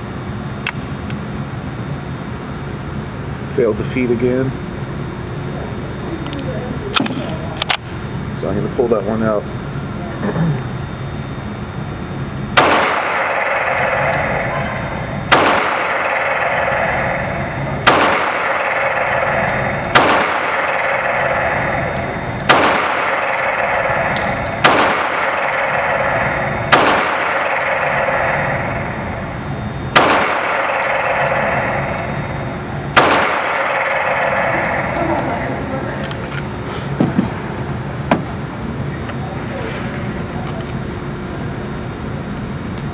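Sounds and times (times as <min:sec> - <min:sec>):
pistol shots echoing: 0:12.6 - 0:35.8.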